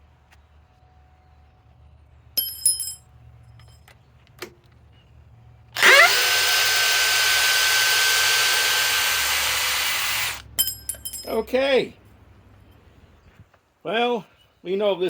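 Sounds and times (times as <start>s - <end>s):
cordless drill whining: 5.8s - 10.4s.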